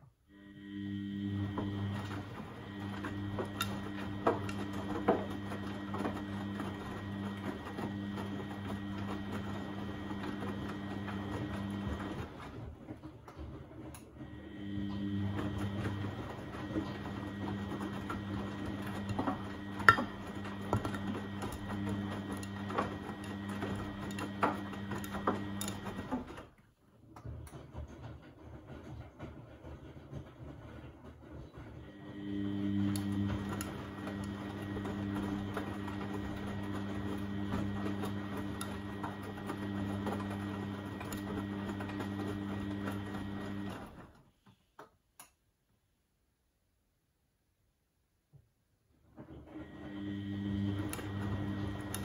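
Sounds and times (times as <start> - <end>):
washing machine motor humming: 0.0 - 44.5, 48.9 - 52.0.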